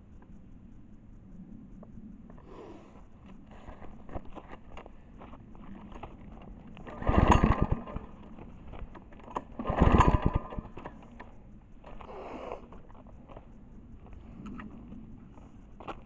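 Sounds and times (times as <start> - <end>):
mower engine cranking chugs: 6.7 - 12.1
recoil starter pulls: 6.8 - 12.9.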